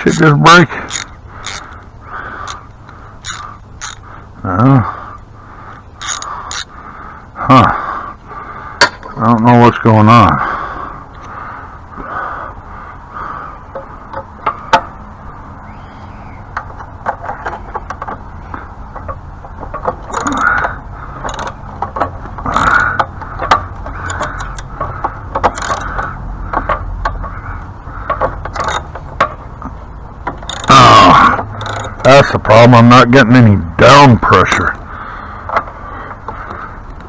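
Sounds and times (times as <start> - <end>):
ratchet scraping rasps: 0.0 - 6.9, 16.5 - 37.0
socket ratchet clicking: 0.9 - 1.8, 3.2 - 4.0, 6.0 - 6.7.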